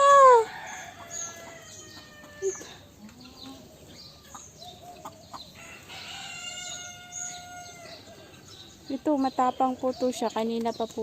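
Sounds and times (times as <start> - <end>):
small birds chirping: 0.0 - 11.0
rooster crowing: 0.2 - 2.8, 5.6 - 8.2
chickens clucking: 0.6 - 11.0.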